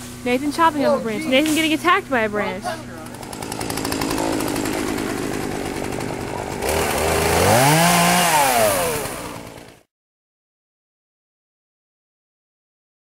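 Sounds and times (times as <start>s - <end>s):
chainsaw revving: 2.8s - 9.9s.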